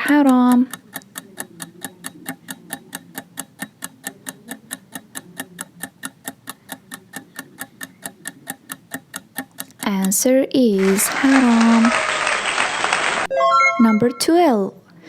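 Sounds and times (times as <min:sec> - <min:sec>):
fast clock-like ticking: 0:00.0 - 0:11.7.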